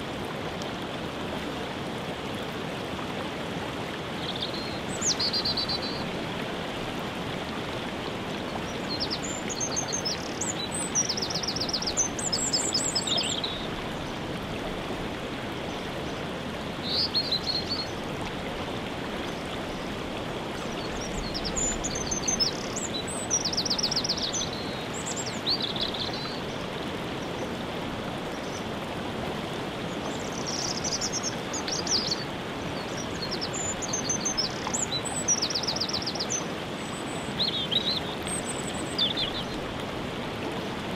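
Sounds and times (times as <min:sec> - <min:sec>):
waterfall rushing water: 0:00.0 - 0:40.9
songbirds trilling: 0:08.6 - 0:14.2, 0:20.6 - 0:26.5, 0:30.0 - 0:39.6.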